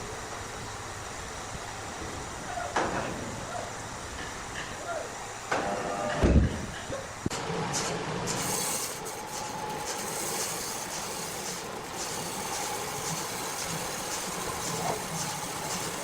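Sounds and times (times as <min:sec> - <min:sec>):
machinery running with rattle: 0:07.8 - 0:16.0.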